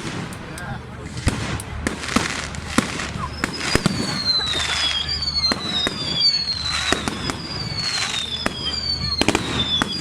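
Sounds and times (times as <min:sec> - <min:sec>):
fireworks bangs and cracks: 0:01.2 - 0:10.0
fireworks whistles falling: 0:03.2 - 0:10.0.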